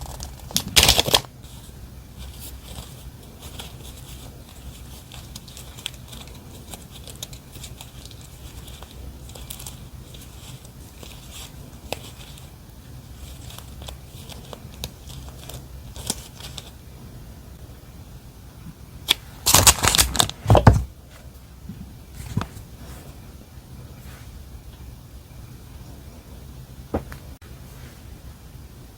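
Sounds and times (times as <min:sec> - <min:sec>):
packaging crinkling: 0:00.0 - 0:12.5, 0:13.1 - 0:16.7, 0:19.1 - 0:20.8.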